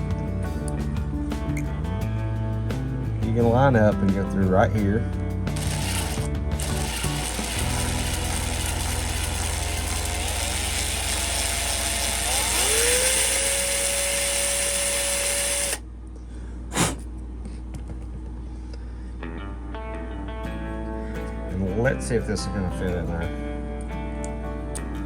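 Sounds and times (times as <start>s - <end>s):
electric drill whining: 5.6s - 15.8s.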